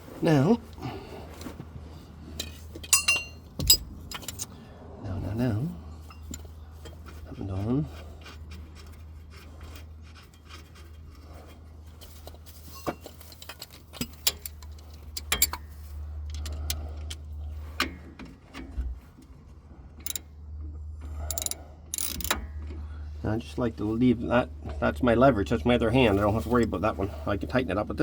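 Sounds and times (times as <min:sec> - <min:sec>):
metallic hand tool clicks: 0:21.3 - 0:22.4.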